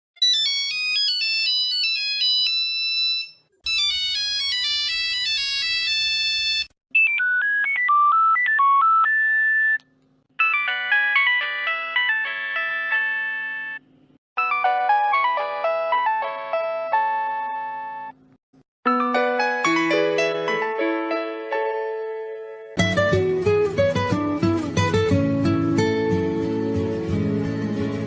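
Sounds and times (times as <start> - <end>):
mobile phone ringtone melodies: 0.2 - 9.8, 10.4 - 13.8, 14.4 - 18.2.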